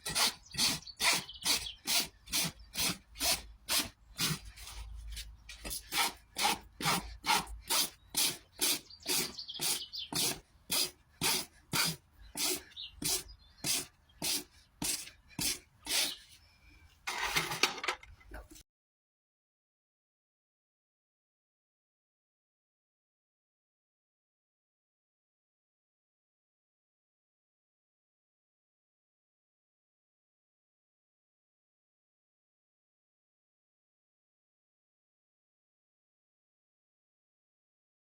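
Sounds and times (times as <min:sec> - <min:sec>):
rasp filing hoof: 0:00.0 - 0:16.4, 0:17.1 - 0:17.8.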